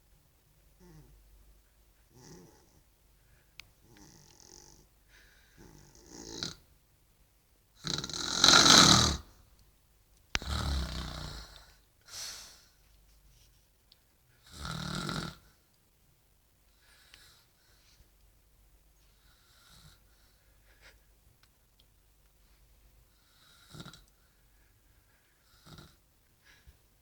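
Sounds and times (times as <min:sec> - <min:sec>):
woman snoring: 0:02.2 - 0:02.8, 0:03.9 - 0:04.8, 0:05.6 - 0:06.6, 0:07.8 - 0:09.3, 0:10.4 - 0:11.6, 0:14.5 - 0:15.4, 0:23.4 - 0:24.0, 0:25.6 - 0:26.0.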